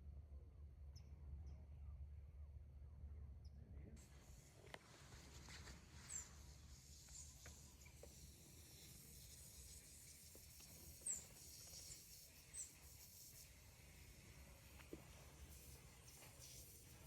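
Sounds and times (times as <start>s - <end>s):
small bird chirping: 7.1s - 13.2s.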